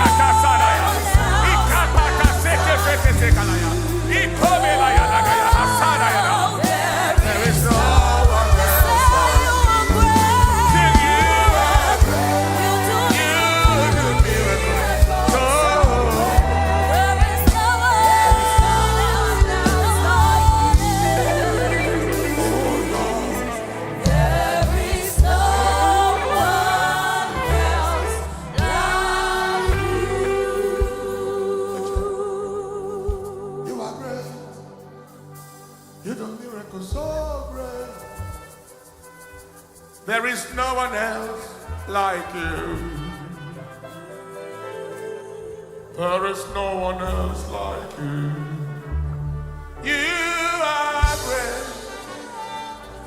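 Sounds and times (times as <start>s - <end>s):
wavering lead melody: 0.0s - 36.0s
voices singing in chorus: 0.0s - 38.8s, 39.5s - 53.0s
gospel band playing: 0.0s - 53.0s.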